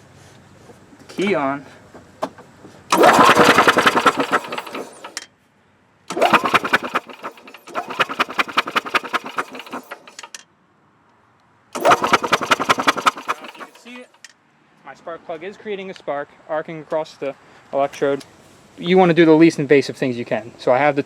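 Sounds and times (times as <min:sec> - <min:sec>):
engine cranking on starter: 0:02.9 - 0:05.2, 0:06.1 - 0:10.4, 0:11.8 - 0:14.1.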